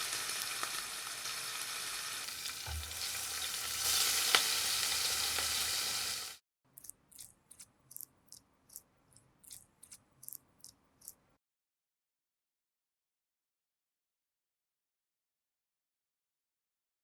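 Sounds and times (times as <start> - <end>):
food sizzling in a frying pan: 0.0 - 6.4.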